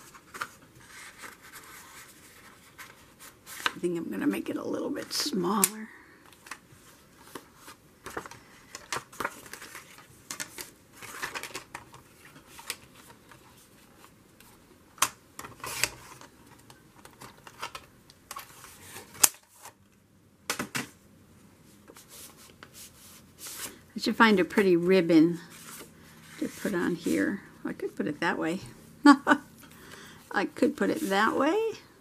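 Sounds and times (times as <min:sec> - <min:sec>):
paper rustling: 0:00.0 - 0:03.8, 0:06.3 - 0:14.6, 0:21.9 - 0:27.1, 0:30.6 - 0:31.4.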